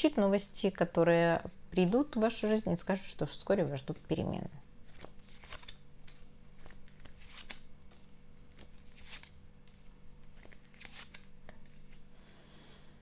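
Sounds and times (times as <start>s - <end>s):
faint steady hum: 0.0s - 13.0s
cards clicking and rustling: 4.9s - 12.0s.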